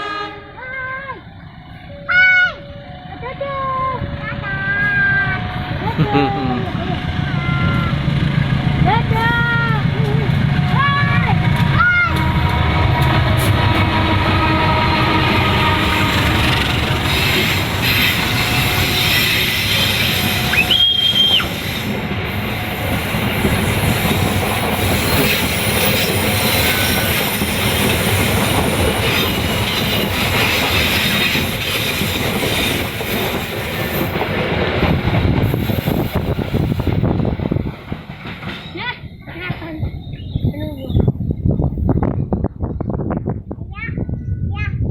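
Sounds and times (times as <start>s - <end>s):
train rumbling on rails: 0.0s - 44.9s
train wheel squeal: 10.7s - 37.6s, 38.2s - 41.7s.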